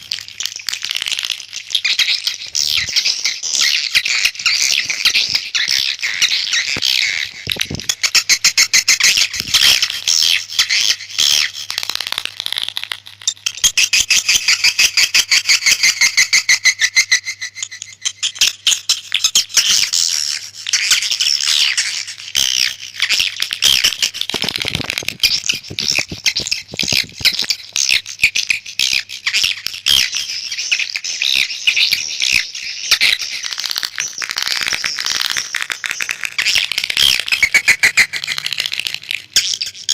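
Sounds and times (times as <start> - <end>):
swiftlets twittering: 21.5 - 39.9.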